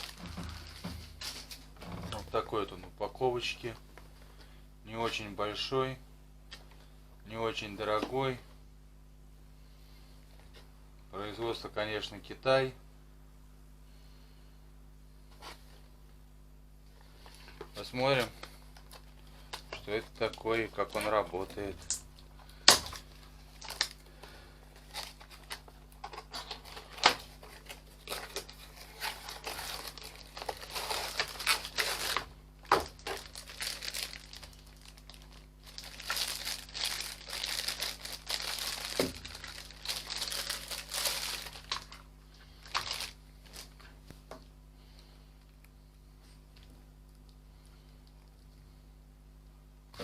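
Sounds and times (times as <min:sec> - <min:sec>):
packaging crinkling and tearing: 0:00.0 - 0:01.7, 0:22.6 - 0:24.0, 0:24.8 - 0:43.9.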